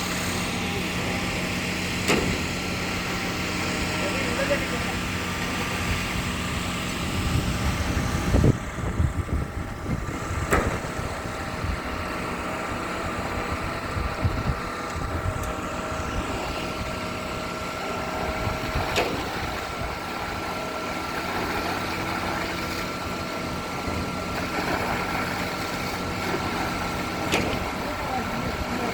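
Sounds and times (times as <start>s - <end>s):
heavy diesel engine running: 0.0s - 28.9s
thin steady whine: 0.0s - 28.9s
sharp knocks: 10.4s - 10.9s.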